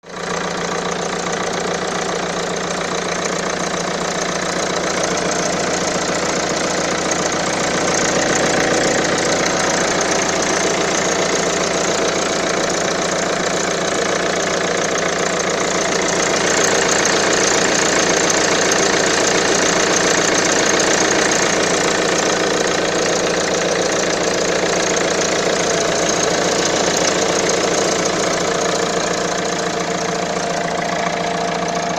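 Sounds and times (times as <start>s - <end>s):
car engine idling: 0.0s - 31.9s.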